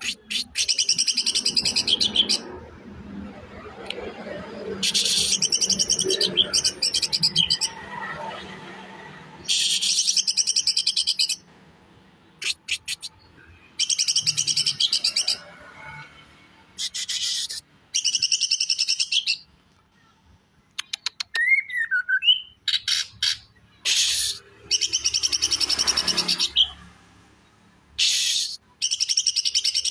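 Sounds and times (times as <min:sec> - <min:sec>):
bird singing harsh rasping bursts: 0:00.0 - 0:02.5, 0:04.8 - 0:07.8, 0:09.4 - 0:11.5, 0:12.4 - 0:15.4, 0:16.8 - 0:19.5, 0:22.2 - 0:26.9, 0:28.0 - 0:29.9.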